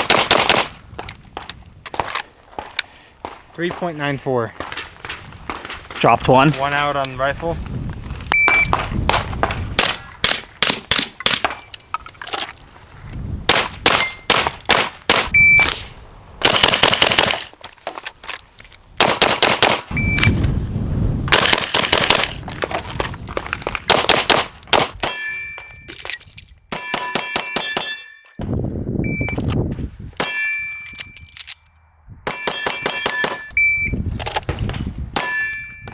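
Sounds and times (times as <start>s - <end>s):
gunshots: 0.0s - 0.8s, 13.5s - 15.8s, 16.4s - 17.5s, 19.0s - 20.0s, 21.3s - 22.4s, 23.9s - 25.0s
short high beep: 8.4s - 8.7s, 15.4s - 15.7s, 19.9s - 20.4s, 29.0s - 29.4s, 33.1s - 34.0s
steel targets clanging: 25.0s - 28.4s, 30.2s - 31.0s, 32.3s - 33.6s, 35.2s - 35.9s.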